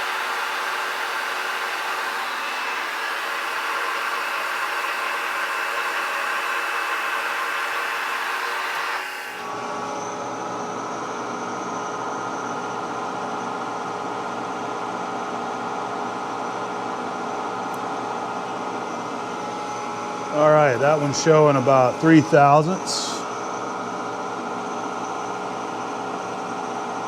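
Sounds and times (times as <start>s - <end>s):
milling machine running: 0.0s - 10.0s, 18.2s - 27.0s.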